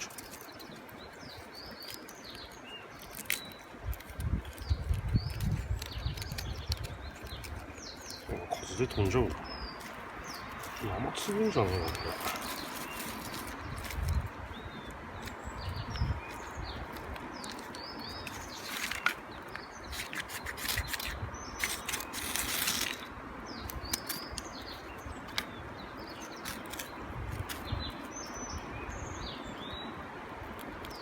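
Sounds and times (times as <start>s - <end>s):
rustling and clicks: 0.0s - 8.3s, 9.1s - 14.4s, 15.2s - 25.5s
small birds chirping: 0.0s - 30.0s
outdoor background hiss: 0.0s - 31.0s.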